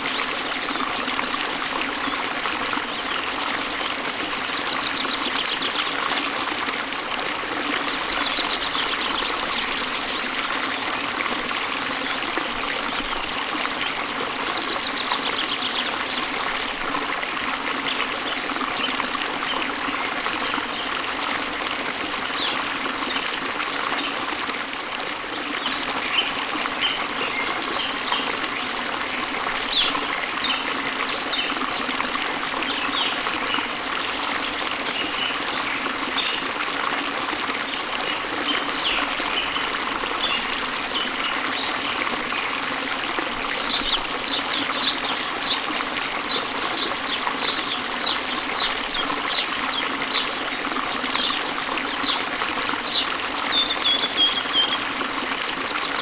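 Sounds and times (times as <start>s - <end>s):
small birds chirping: 8.0s - 11.1s, 51.2s - 54.9s.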